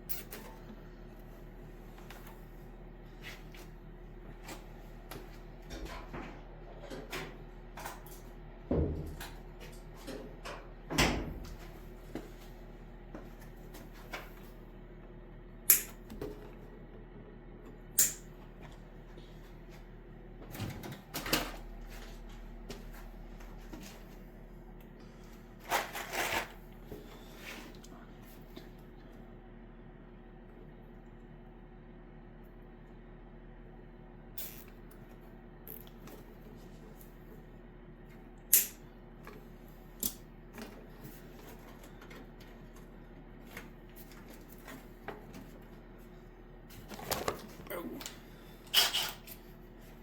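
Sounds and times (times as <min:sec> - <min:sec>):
faint steady hum: 0:00.0 - 0:50.0
tools clicking and tapping: 0:15.7 - 0:16.1, 0:18.0 - 0:18.3, 0:38.5 - 0:38.8.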